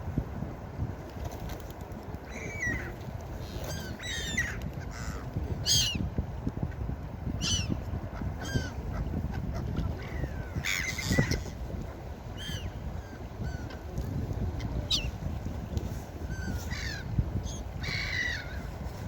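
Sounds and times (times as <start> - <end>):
low background rush: 0.0 - 19.0
gulls calling: 2.2 - 6.1, 7.4 - 14.0, 14.6 - 15.2, 16.2 - 18.8.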